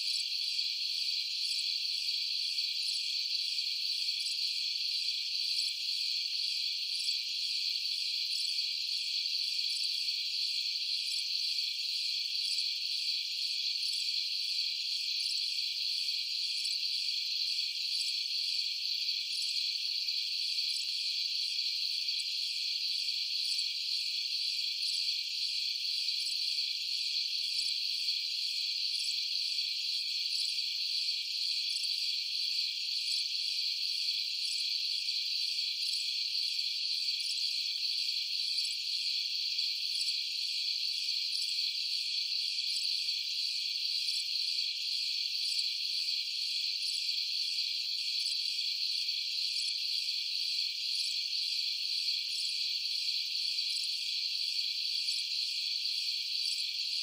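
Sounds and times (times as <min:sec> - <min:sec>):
crickets trilling: 0:00.0 - 0:57.0.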